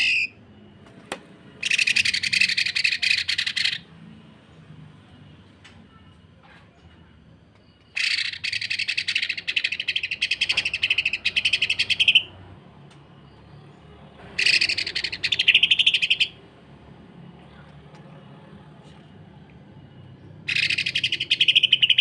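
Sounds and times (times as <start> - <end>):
bird chattering rattle: 1.6 - 3.8, 7.9 - 12.3, 14.4 - 16.3, 20.5 - 22.0.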